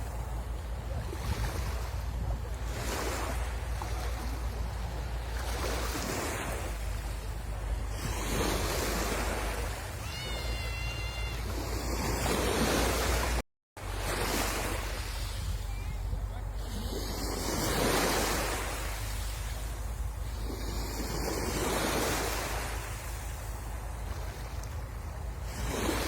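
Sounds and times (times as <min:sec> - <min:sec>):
sea waves breaking: 0:00.0 - 0:26.0
wind rumble on microphone: 0:00.0 - 0:26.0
high-pitched cry: 0:10.0 - 0:11.6.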